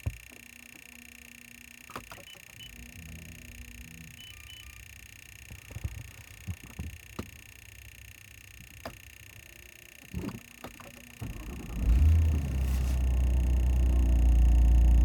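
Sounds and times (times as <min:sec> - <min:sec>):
faint high hum: 0:00.0 - 0:15.0
electronic chime tones: 0:04.1 - 0:04.9
engine cranking and firing: 0:11.1 - 0:15.0.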